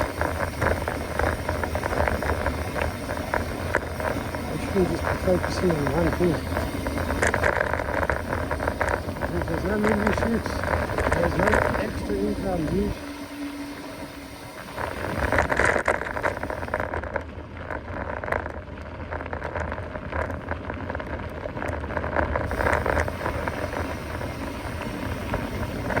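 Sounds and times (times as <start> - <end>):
bike tyres on rough ground: 0.0 - 26.0
constant low rumble: 0.0 - 26.0
small clicks and rattles: 0.0 - 26.0.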